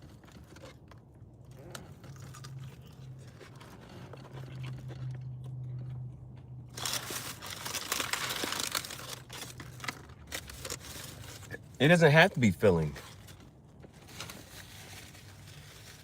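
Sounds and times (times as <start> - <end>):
fried chicken skin crunching: 0.0 - 11.6.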